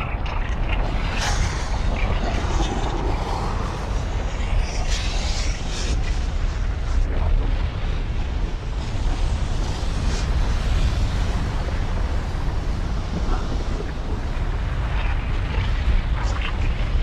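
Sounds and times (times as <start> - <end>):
deep rumble: 0.0 - 17.0
hissing noise: 0.6 - 7.9.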